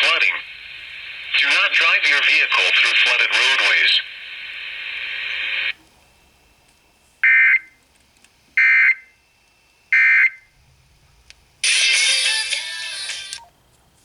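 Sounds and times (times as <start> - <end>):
music: 11.6 - 13.4.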